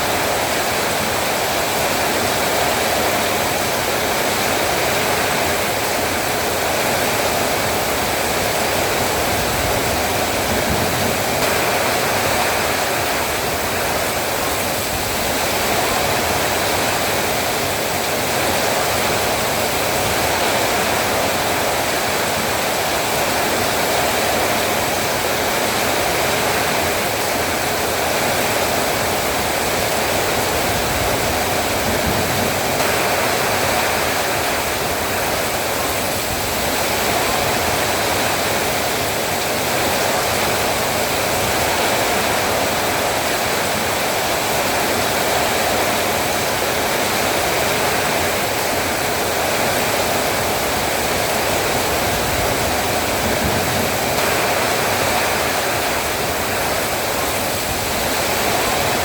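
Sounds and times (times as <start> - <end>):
heavy rain pouring: 0.0 - 59.0.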